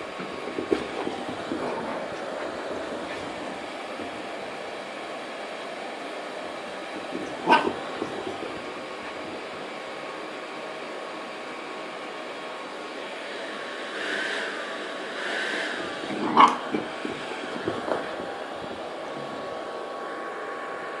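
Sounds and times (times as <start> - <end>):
hair dryer blowing: 0.0 - 21.0
dog barking: 7.1 - 9.2, 16.0 - 18.1.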